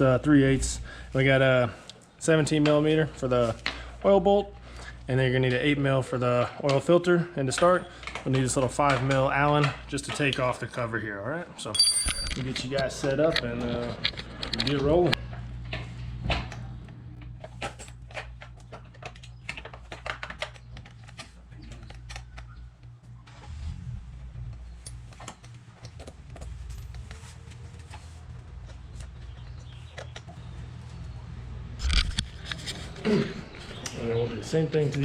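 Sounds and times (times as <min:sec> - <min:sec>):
low hum: 0:11.8 - 0:12.7, 0:20.8 - 0:34.4.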